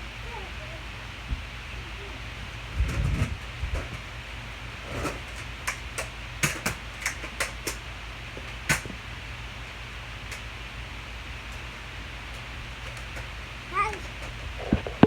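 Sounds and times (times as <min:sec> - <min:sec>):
objects clicking and knocking: 0:04.9 - 0:07.8.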